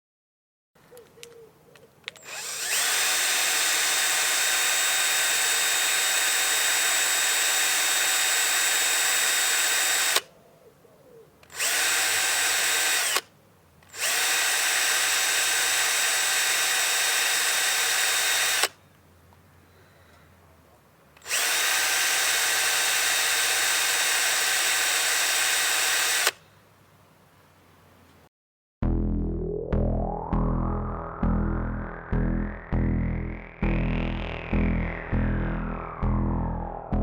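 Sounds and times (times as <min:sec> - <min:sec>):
electric drill motor whining: 0:02.2 - 0:10.2, 0:11.5 - 0:13.2, 0:13.9 - 0:18.7, 0:21.2 - 0:26.4.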